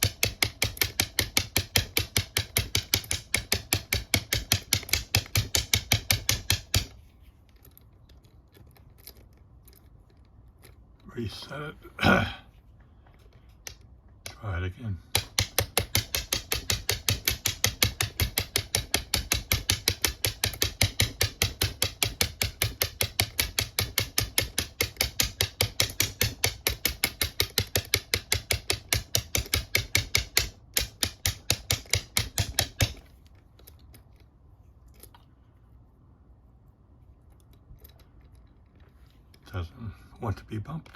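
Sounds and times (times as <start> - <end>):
bump key tapping in padlock: 15.1 - 34.2.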